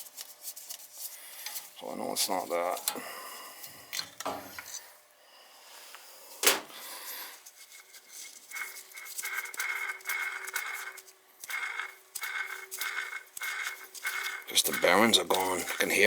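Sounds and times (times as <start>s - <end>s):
pump motor bearing squealing: 7.7s - 16.0s.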